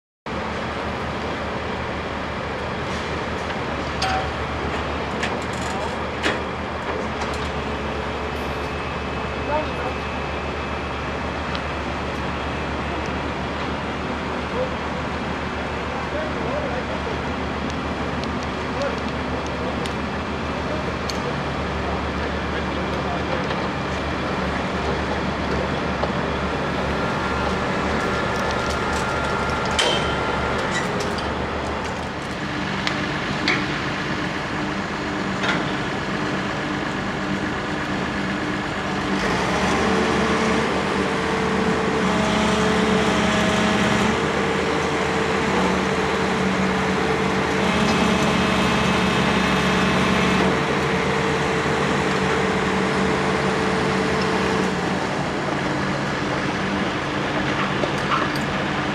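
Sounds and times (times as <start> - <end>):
heavy diesel machinery running: 0.3 - 58.9
sharp metallic clanks: 27.5 - 32.5.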